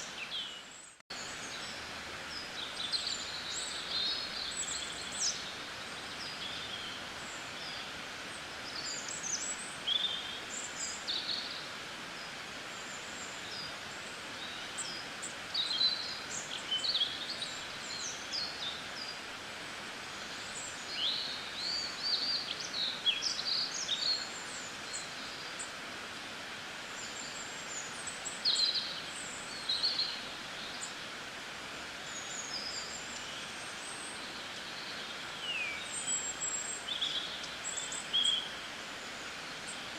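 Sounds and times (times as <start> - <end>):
small birds chirping: 0.0 - 19.4, 20.0 - 25.8, 26.8 - 39.9
steady background hiss: 0.0 - 39.9.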